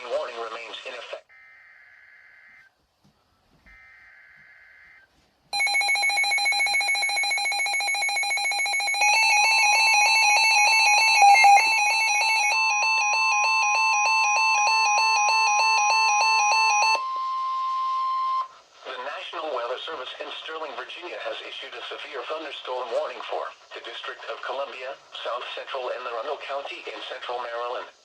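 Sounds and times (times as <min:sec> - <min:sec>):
buzzing data tones: 0:05.6 - 0:18.5
pulsing multi-tone alarm beeps: 0:05.6 - 0:18.5
steady warning tone: 0:05.6 - 0:18.6.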